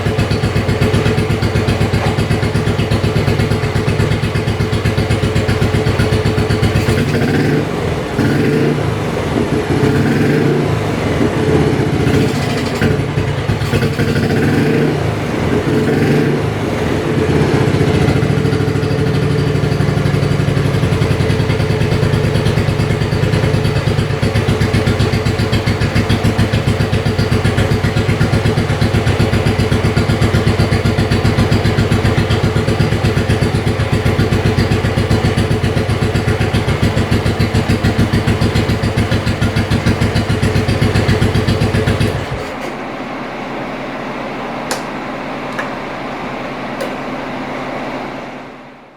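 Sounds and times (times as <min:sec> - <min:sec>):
motorcycle engine revving and idling: 0:00.0 - 0:48.9.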